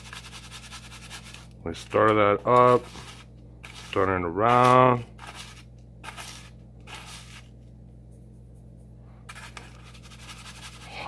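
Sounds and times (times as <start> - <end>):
low electrical hum: 0.0 - 11.0
spoon scraping in bowl: 2.5 - 7.5, 9.3 - 10.8.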